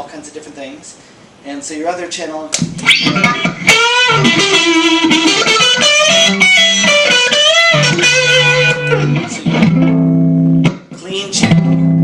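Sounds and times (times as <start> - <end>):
electric guitar lead phrases: 2.8 - 12.0.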